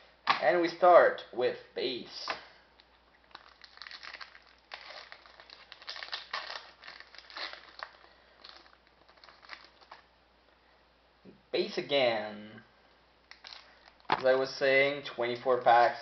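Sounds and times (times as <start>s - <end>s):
card wrapper crinkling and tearing: 3.2s - 10.1s, 13.3s - 14.3s.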